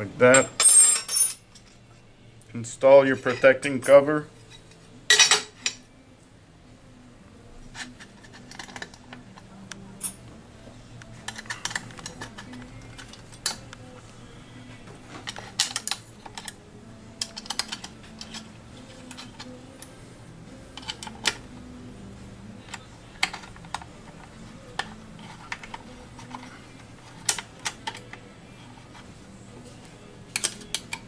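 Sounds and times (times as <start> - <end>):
small metal parts clicking: 11.3 - 13.7, 15.2 - 16.6, 17.2 - 19.8, 20.8 - 21.4, 24.8 - 28.2, 30.3 - 31.0.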